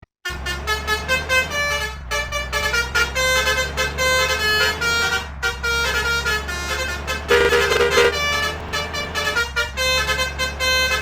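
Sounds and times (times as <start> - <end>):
multi-tone air horn melody: 4.6 - 11.0.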